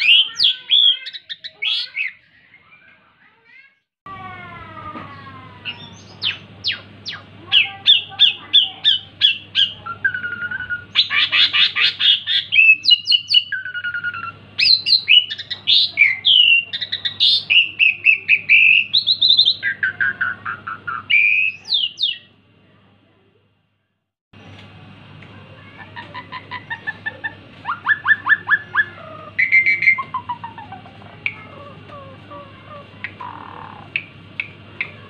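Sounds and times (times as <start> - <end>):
starling singing whistles and chirps: 12.0 - 22.3, 27.6 - 30.5.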